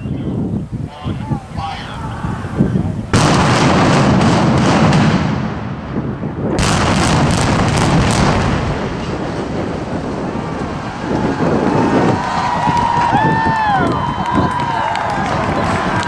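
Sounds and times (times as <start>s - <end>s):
heavy rumble: 2.2s - 16.0s
demolition charges firing: 3.1s - 13.5s.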